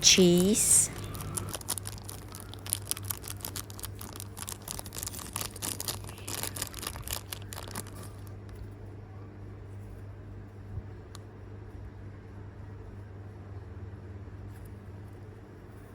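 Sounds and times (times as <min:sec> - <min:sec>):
plastic packaging crinkling: 0:00.1 - 0:08.6.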